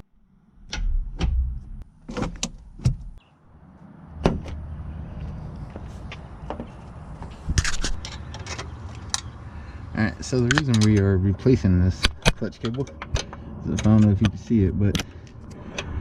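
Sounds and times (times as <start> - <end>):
steady low rumble: 3.0 - 16.0
knocks and clicks of handling: 5.7 - 9.4, 10.4 - 11.1, 12.0 - 16.0.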